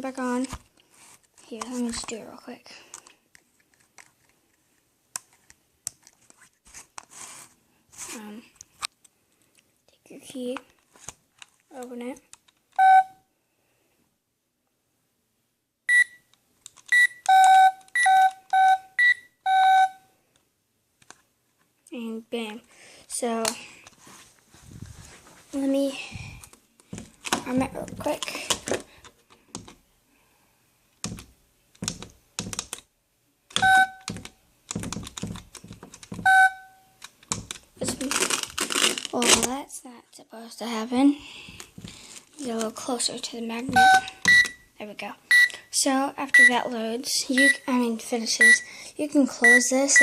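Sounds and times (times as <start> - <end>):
toy door alarm beeping: 12.8 - 13.2, 15.9 - 16.2, 16.9 - 20.0, 33.6 - 34.2, 36.2 - 36.8, 43.7 - 44.6, 45.3 - 45.6, 46.3 - 46.5, 47.4 - 47.6, 48.4 - 48.7, 49.4 - 50.0
short electronic beeps: 15.9 - 16.2, 33.6 - 34.1, 36.3 - 36.8, 43.7 - 44.6, 45.3 - 45.5
plastic buttons clicking: 33.5 - 36.4.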